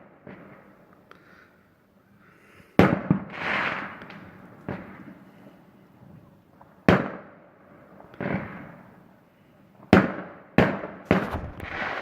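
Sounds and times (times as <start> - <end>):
fireworks hissing crackle: 3.3 - 4.0, 11.1 - 12.0
fireworks bangs: 11.1 - 12.0.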